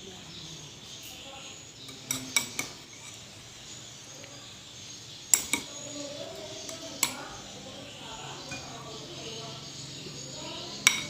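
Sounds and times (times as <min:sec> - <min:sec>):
utensils clinking against plates: 0:01.8 - 0:03.4, 0:05.3 - 0:11.0.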